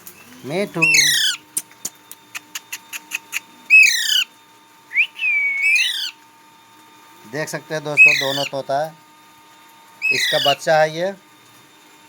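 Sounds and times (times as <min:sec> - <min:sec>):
parrot whistled call: 0:00.3 - 0:01.4, 0:02.3 - 0:04.3, 0:04.9 - 0:06.2, 0:08.0 - 0:08.5, 0:10.0 - 0:10.6
parrot screeching: 0:00.8 - 0:01.4, 0:02.6 - 0:04.3, 0:04.9 - 0:06.2, 0:08.0 - 0:08.6, 0:10.0 - 0:10.7
sharp clicks: 0:01.6 - 0:03.5.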